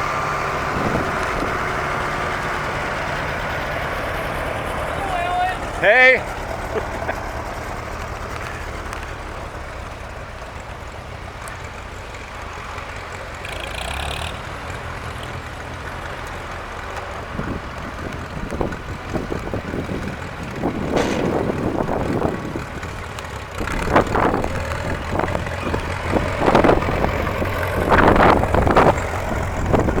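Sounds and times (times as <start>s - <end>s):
tractor engines running: 0.0s - 30.0s
wind buffeting microphone: 0.1s - 3.0s, 17.2s - 30.0s.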